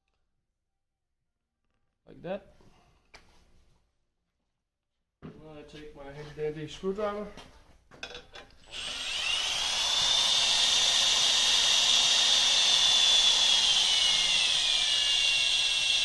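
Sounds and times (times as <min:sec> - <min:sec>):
electric screwdriver motor whine: 0:08.7 - 0:16.0.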